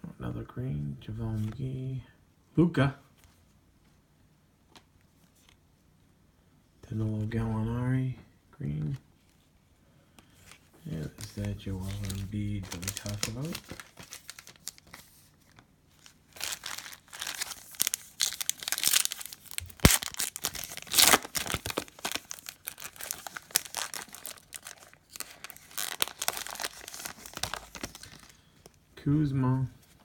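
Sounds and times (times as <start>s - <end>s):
cards being handled: 10.2s - 28.8s
plastic wrapper crinkling and tearing: 10.9s - 28.8s.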